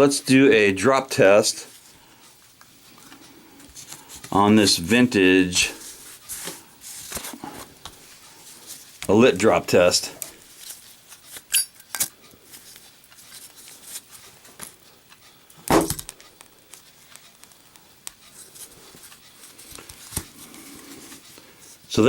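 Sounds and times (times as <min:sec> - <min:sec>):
faint handling noise: 0:01.6 - 0:15.4.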